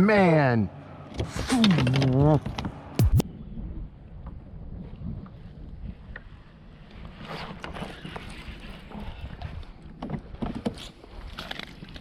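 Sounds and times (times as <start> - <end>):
wind rumbling on microphone: 3.1 - 10.6.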